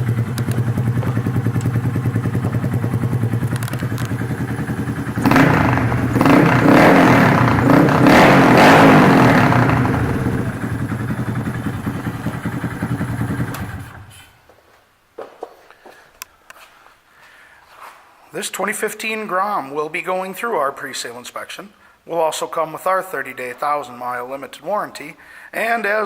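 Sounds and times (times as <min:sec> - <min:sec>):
motorcycle engine idling and revving: 0:00.0 - 0:14.2.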